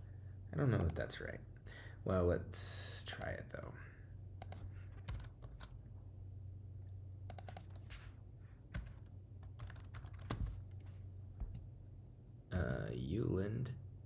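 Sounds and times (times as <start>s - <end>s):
low steady hum: 0.0s - 14.0s
computer keyboard typing: 3.1s - 3.4s, 4.4s - 5.8s, 7.3s - 10.9s.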